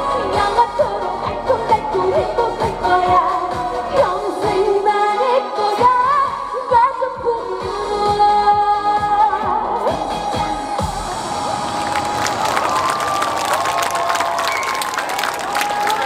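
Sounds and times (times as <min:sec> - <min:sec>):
backing track with drum beat: 0:00.0 - 0:04.9, 0:05.7 - 0:12.1
person singing pop song: 0:00.0 - 0:11.5.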